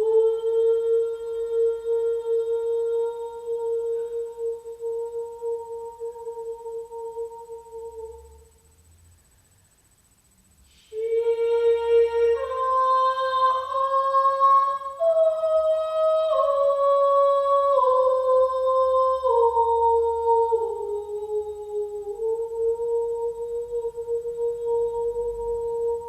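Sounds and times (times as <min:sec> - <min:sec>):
woman chanting long held notes: 0:00.0 - 0:08.5, 0:10.7 - 0:26.0.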